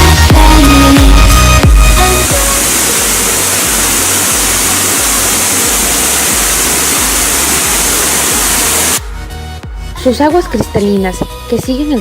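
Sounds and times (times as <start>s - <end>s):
waterfall roaring: 2.1s - 9.0s.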